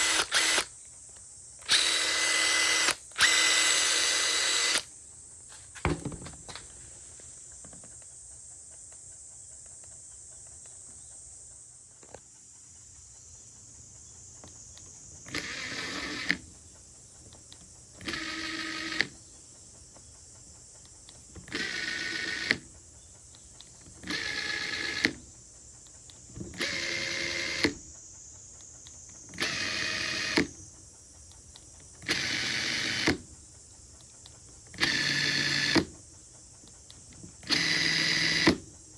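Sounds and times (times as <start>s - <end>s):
impact driver motor whine: 0.0s - 0.8s, 1.6s - 4.9s, 15.2s - 16.5s, 18.0s - 19.2s, 21.4s - 22.6s, 24.0s - 25.3s, 26.3s - 27.9s, 29.3s - 30.6s, 32.0s - 33.3s, 34.8s - 35.9s, 37.4s - 38.6s
clicks: 0.0s - 4.9s.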